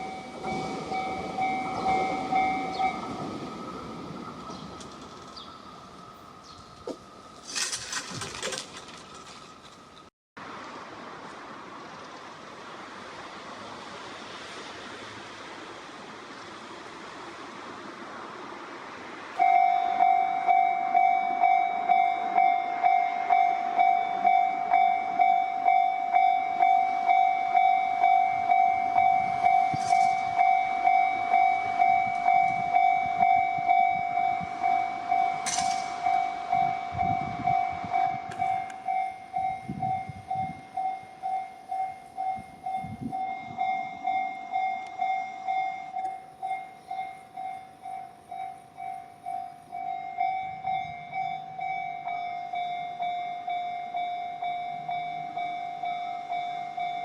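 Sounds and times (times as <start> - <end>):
level crossing warning bell: 0.0 - 6.6, 19.4 - 57.0.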